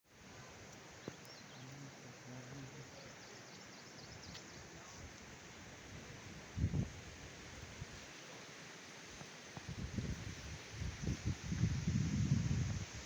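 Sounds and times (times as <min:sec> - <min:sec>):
faint bird chirps: 0:00.9 - 0:04.9.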